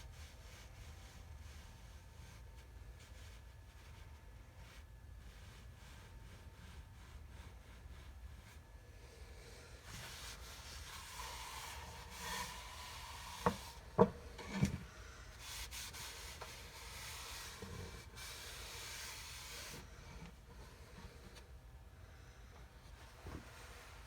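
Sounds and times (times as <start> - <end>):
scraping against wooden board: 9.9 - 14.9.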